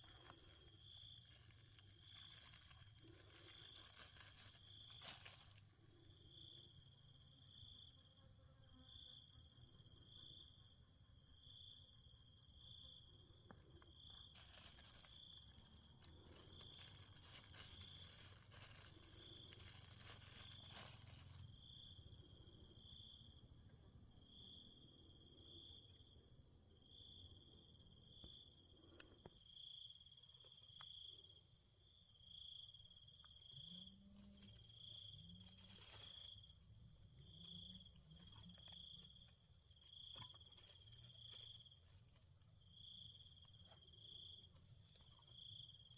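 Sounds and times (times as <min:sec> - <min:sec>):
insect high trill: 0:00.0 - 0:06.8, 0:13.9 - 0:23.3, 0:32.7 - 0:41.8
pulsing insect chirp: 0:00.0 - 0:45.9.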